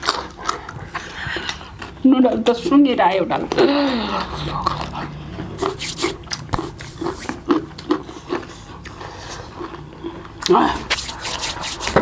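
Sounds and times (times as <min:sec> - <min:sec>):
chewing and lip smacks: 0:00.0 - 0:02.7, 0:03.4 - 0:12.0
slurping noodles: 0:03.6 - 0:12.0.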